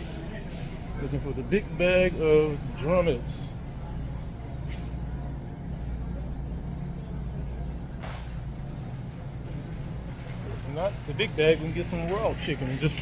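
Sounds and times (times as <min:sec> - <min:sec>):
low mechanical hum: 0:00.0 - 0:13.0.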